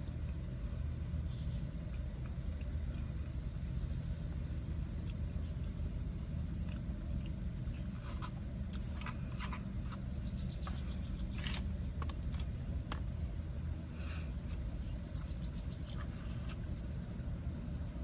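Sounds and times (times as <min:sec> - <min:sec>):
chewing: 0:01.9 - 0:03.4
utensil against food container: 0:07.8 - 0:16.7.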